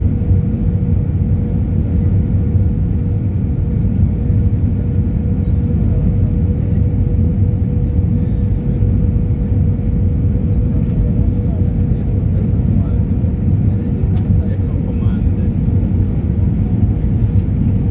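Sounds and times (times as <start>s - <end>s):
jet engines rumbling: 0.0s - 17.9s.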